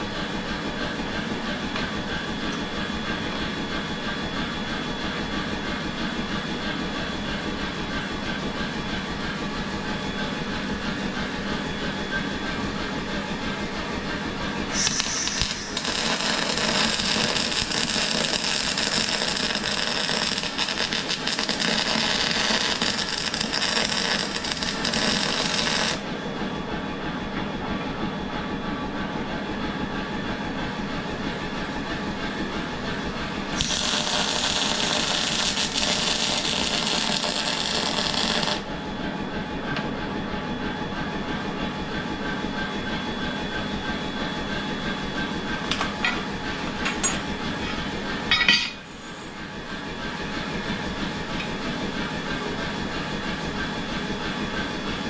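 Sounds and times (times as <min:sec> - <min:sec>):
workshop machine hum: 0:00.0 - 0:55.0
hissing crackling metalworking: 0:14.7 - 0:26.1, 0:33.5 - 0:38.7, 0:45.8 - 0:49.1.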